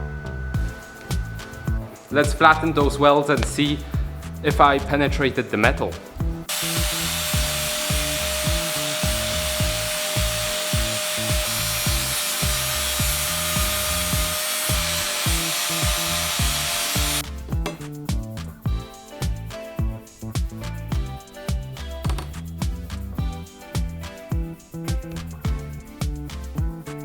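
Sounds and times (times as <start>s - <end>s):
angle grinder grinding steel: 6.5s - 17.3s.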